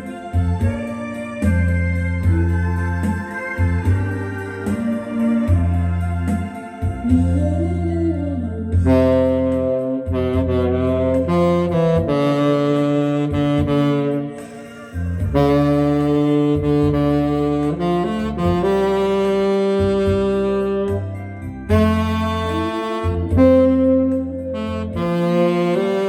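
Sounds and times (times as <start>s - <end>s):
backing track with bass line: 0.0s - 26.0s
saxophone slow melody: 0.0s - 26.0s.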